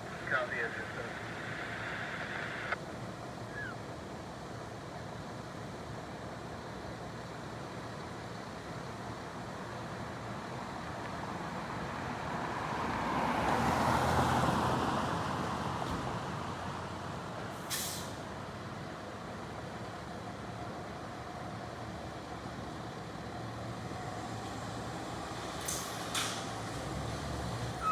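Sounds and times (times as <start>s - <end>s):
sharp hiss of air: 17.6s - 18.2s.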